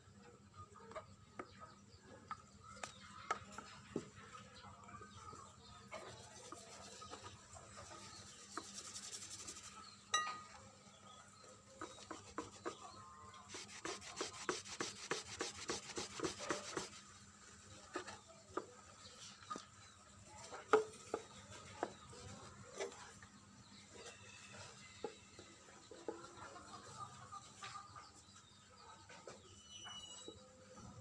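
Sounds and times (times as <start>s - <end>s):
abrasive tool rubbing strokes: 8.0s - 9.8s, 13.5s - 17.1s.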